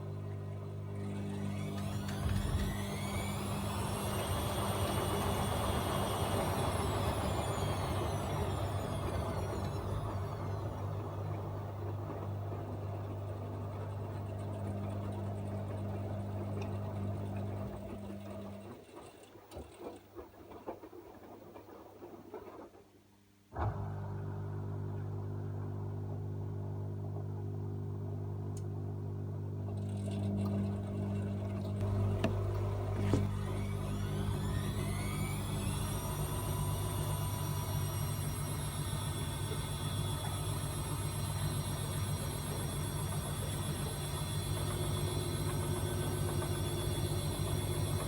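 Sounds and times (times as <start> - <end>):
washing machine running: 0.0 - 22.7, 23.5 - 48.0
motor whine: 0.7 - 18.6, 29.1 - 48.0
clicks: 31.6 - 33.8.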